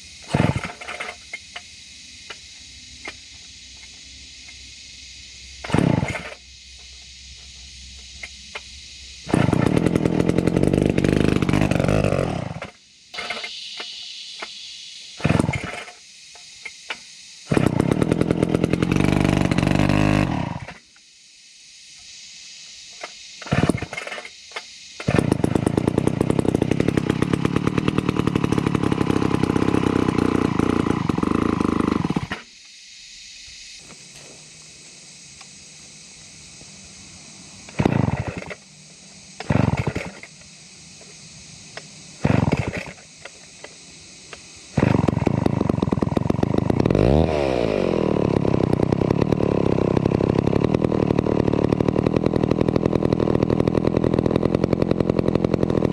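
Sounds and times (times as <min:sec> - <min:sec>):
chainsaw being pull-started: 0:00.2 - 0:01.7, 0:05.6 - 0:14.5, 0:15.2 - 0:16.0, 0:16.6 - 0:20.9, 0:23.0 - 0:32.6, 0:37.6 - 0:38.7, 0:39.4 - 0:41.1, 0:41.7 - 0:55.9.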